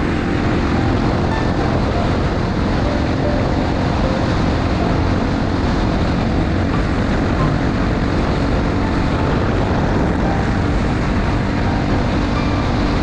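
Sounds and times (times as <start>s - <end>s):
wind noise on microphone: 0.0s - 13.0s
motorcycle engine running: 2.0s - 13.0s.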